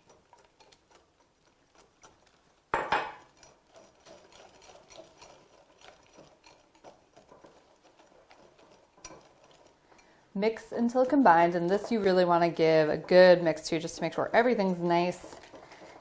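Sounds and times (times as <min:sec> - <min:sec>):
whisk scraping mixing bowl: 0:00.0 - 0:16.0
kitchenware clunk: 0:02.8 - 0:03.3.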